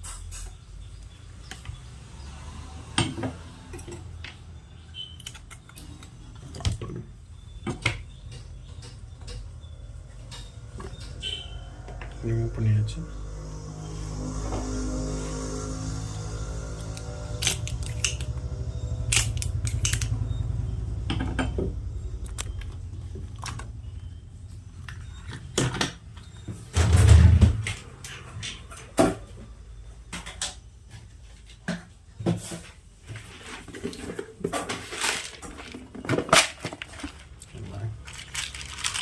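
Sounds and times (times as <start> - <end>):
tools clicking and tapping: 7.6 - 11.3, 19.1 - 20.1
low hum: 11.9 - 25.4.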